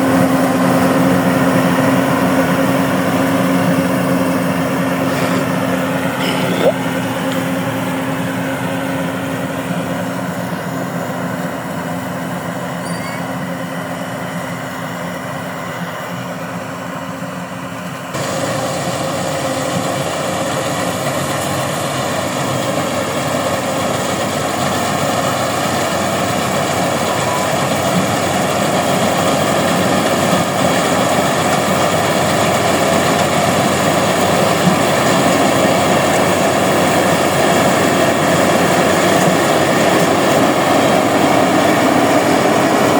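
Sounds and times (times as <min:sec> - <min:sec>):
combine harvester engine running: 0:00.0 - 0:42.9.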